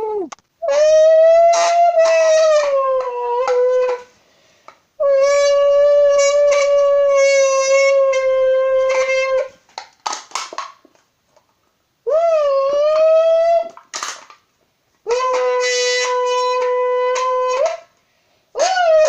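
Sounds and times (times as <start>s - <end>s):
buzzing horn-like tone from can: 5.1s - 9.6s.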